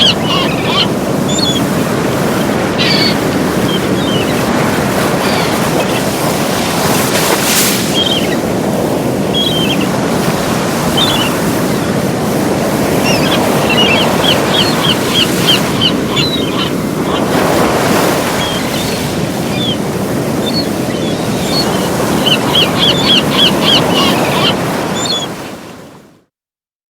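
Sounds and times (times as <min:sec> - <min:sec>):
short high bird calls: 0:00.0 - 0:01.7, 0:02.4 - 0:04.4, 0:09.3 - 0:09.9, 0:13.0 - 0:17.3, 0:20.4 - 0:25.3
sea waves breaking on beach: 0:00.0 - 0:26.2.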